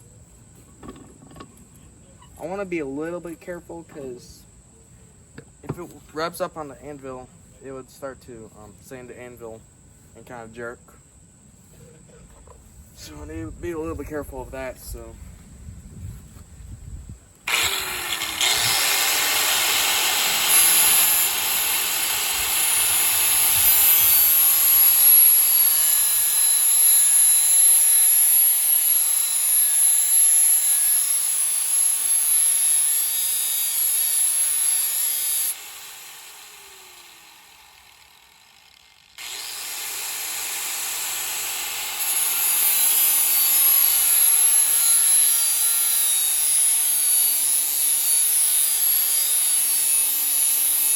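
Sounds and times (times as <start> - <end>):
sander spinning down whine: 17.5 - 26.8, 35.5 - 42.6
electric sander grinding blade: 17.5 - 50.9.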